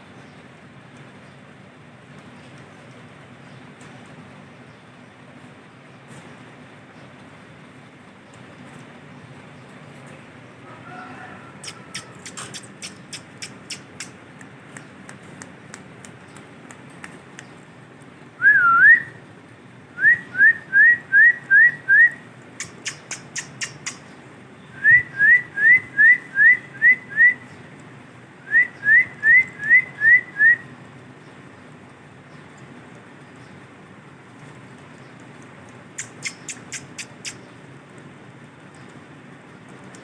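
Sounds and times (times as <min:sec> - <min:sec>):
sharp clicks: 0:11.6 - 0:17.7, 0:22.6 - 0:24.2, 0:35.4 - 0:37.5
parakeet whistling: 0:21.3 - 0:24.0, 0:36.0 - 0:37.4.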